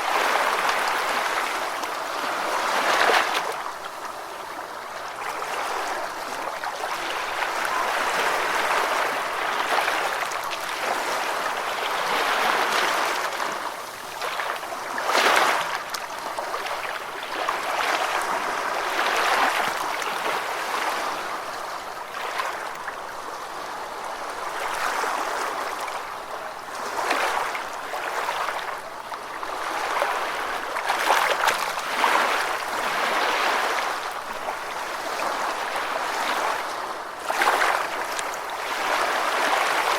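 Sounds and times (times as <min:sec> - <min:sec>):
ocean waves washing onto beach: 0:00.0 - 0:39.9
waves breaking with splashes: 0:00.0 - 0:39.9.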